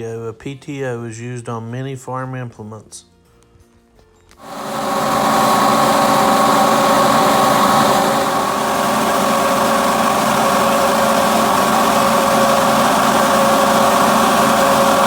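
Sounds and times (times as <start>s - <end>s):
tractor engine running: 4.4s - 15.0s.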